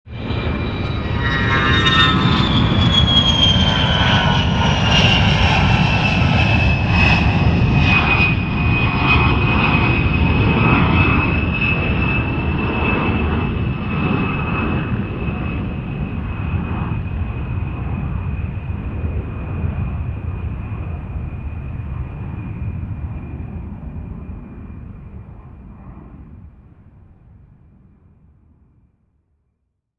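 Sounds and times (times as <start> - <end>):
low rumble: 0.1 - 7.8
jet engine whine: 0.1 - 27.9.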